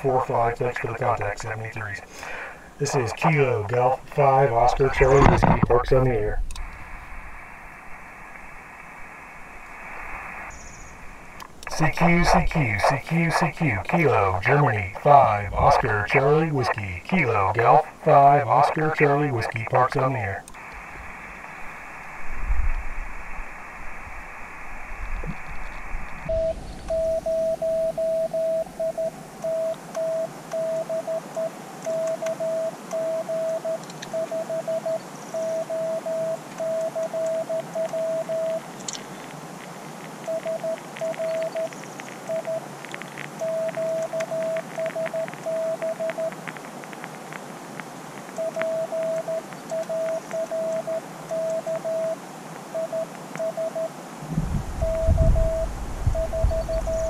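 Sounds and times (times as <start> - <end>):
receiver hiss: 0.0 - 57.0
static crackles: 0.0 - 57.0
morse code beeps: 2.8 - 5.8, 11.7 - 20.4, 26.2 - 38.6, 40.3 - 42.7, 43.4 - 46.4, 48.4 - 52.2, 52.8 - 53.9, 54.8 - 57.0.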